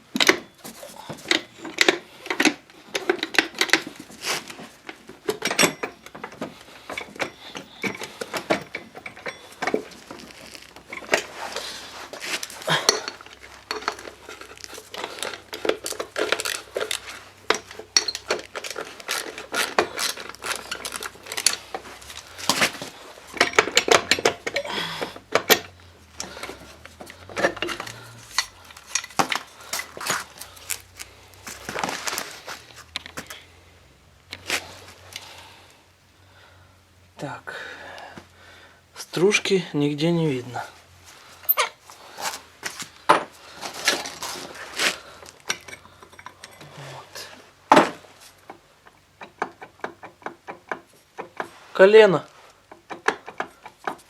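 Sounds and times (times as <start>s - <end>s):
metal tools and bolts clinking: 0.1s - 33.5s, 41.4s - 47.4s.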